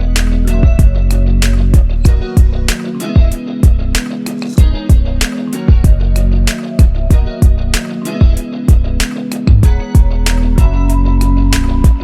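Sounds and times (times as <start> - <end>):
thumping kick drums: 0.6 - 1.0, 1.8 - 4.0, 4.6 - 6.0, 6.8 - 10.8.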